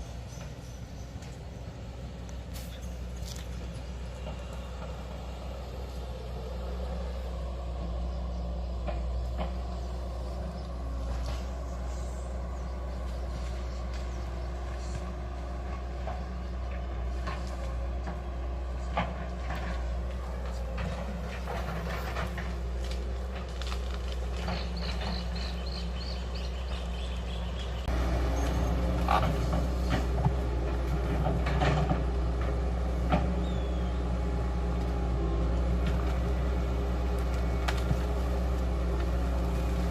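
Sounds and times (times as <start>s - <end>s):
diesel engine running: 0.0s - 39.9s
excavator knocks and clanks: 8.6s - 39.9s.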